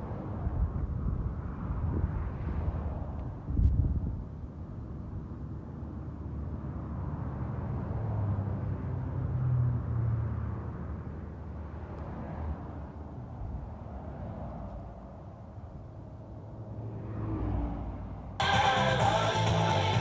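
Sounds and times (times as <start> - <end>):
passing vehicle engine hum: 5.7 - 20.0.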